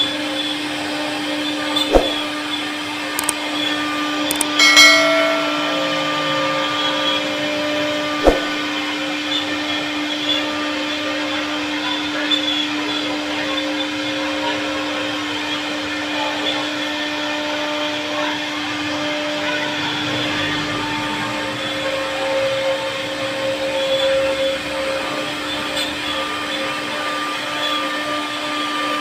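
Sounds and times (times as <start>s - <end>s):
sharp click: 4.3s - 4.7s.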